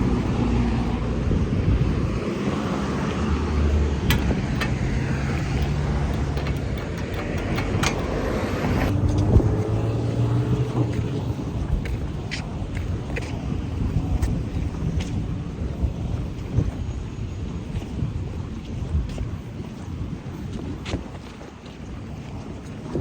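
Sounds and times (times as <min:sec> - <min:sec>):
car engines humming: 0:02.0 - 0:12.6
sharp clicks: 0:04.0 - 0:08.9.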